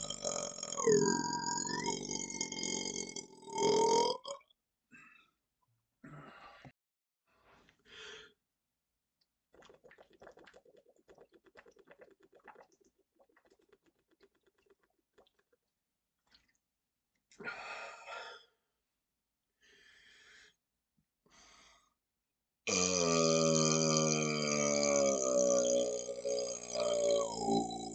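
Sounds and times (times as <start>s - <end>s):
man burping: 0.0s - 4.4s, 22.7s - 27.9s
man breathing: 19.6s - 20.6s.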